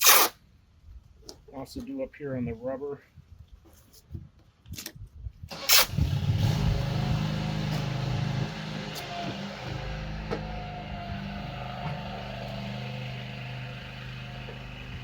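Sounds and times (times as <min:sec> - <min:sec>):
electric polisher motor hum: 0:06.8 - 0:15.0.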